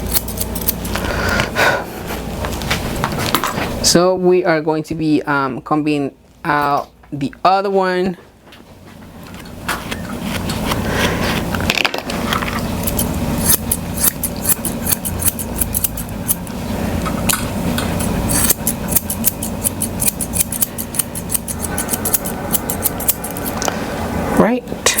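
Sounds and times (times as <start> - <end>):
shears snipping dog hair: 0.0 - 1.5, 12.7 - 23.8.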